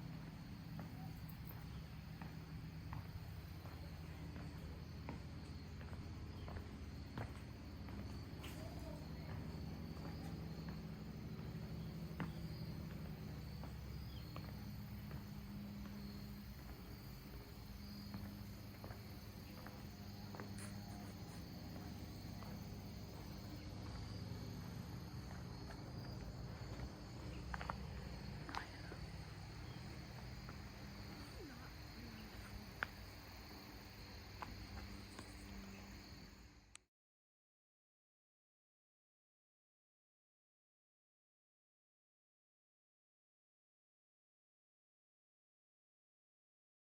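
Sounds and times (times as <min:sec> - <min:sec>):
low background rumble: 0:00.0 - 0:36.3
crickets chirping: 0:00.0 - 0:36.8.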